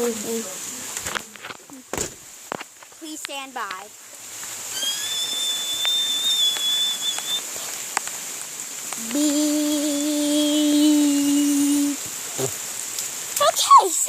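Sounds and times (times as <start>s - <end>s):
high whistled note: 4.7s - 7.5s.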